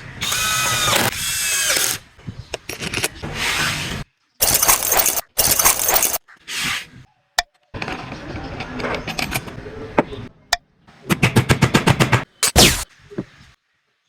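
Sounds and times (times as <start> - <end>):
parts clicking and clinking: 4.4 - 6.2.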